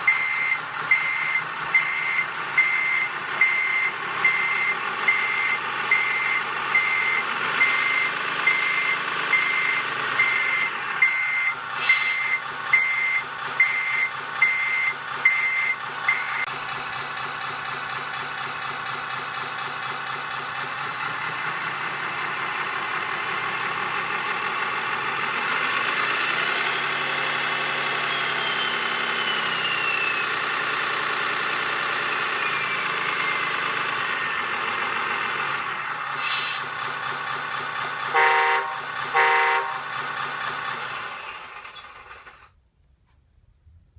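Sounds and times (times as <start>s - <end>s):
simulated diesel engine: 0.0s - 43.9s
reversing beeps from speaker: 0.1s - 16.5s.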